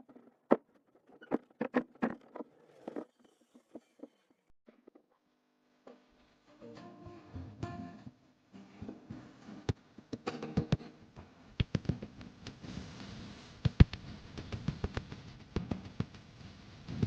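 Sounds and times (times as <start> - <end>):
music with plucked notes: 6.5 - 9.0.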